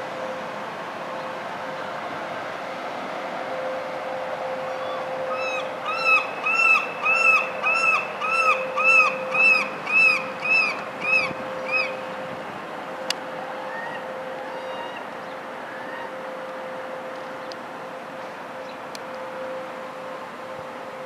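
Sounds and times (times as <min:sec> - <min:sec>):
bird calling: 0:04.8 - 0:12.0.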